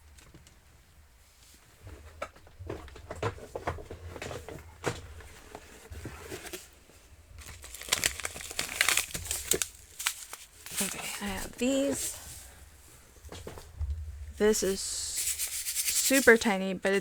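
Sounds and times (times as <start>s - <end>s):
rustling: 3.5s - 16.5s.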